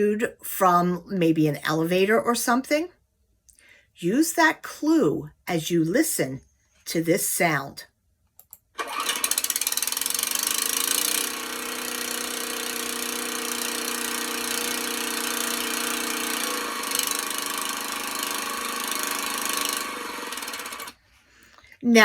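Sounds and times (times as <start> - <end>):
hydraulic rescue tool droning: 8.8 - 21.0.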